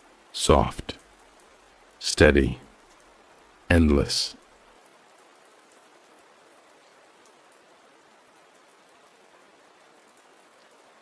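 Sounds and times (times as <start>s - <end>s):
faint rain falling: 0.0s - 11.0s.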